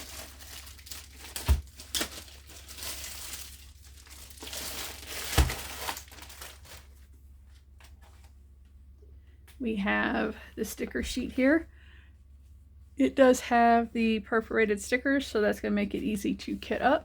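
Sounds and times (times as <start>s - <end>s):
plastic packaging crinkling: 0.0s - 8.2s.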